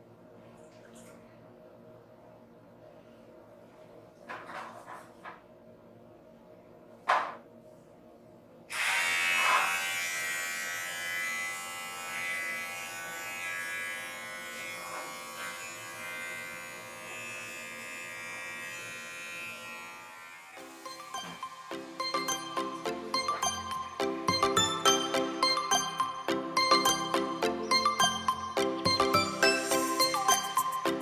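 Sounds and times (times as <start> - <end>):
electric hair clipper buzzing: 8.7 - 26.1.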